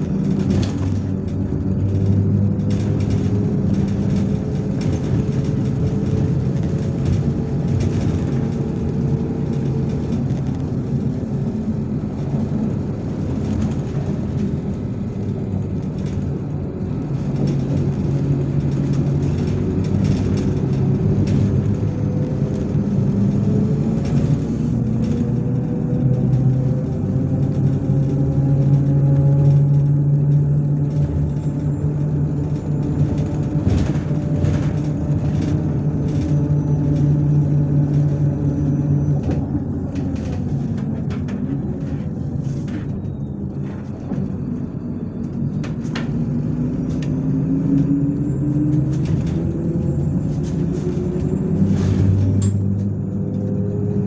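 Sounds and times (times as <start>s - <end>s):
rattles: 0.0s - 16.4s
bus engine rumble: 0.0s - 54.0s
road noise: 0.0s - 54.0s.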